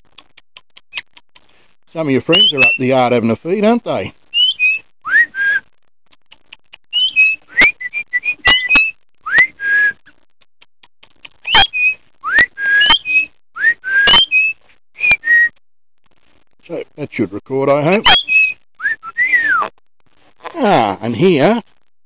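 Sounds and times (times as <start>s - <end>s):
sharp clicks: 0.0s - 2.6s, 6.0s - 8.9s, 10.1s - 12.0s
cockatoo whistled calls: 2.3s - 2.8s, 4.3s - 5.6s, 6.9s - 10.0s, 11.4s - 15.5s, 18.1s - 19.7s.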